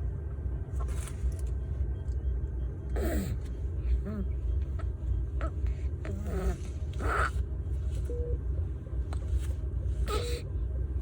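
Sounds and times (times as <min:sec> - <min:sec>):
incubator low hum: 0:00.0 - 0:11.0
baby whimpering: 0:03.0 - 0:03.4, 0:05.4 - 0:07.4, 0:10.1 - 0:10.4.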